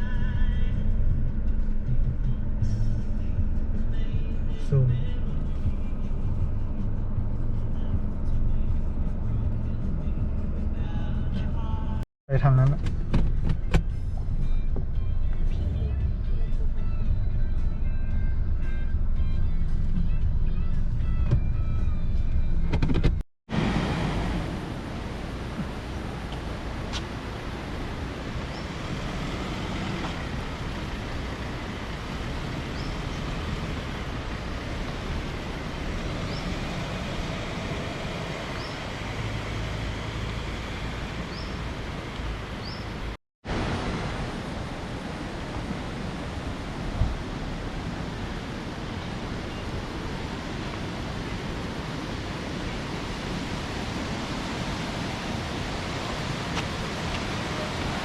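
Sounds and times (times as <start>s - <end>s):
waterfall rushing: 23.5s - 58.0s.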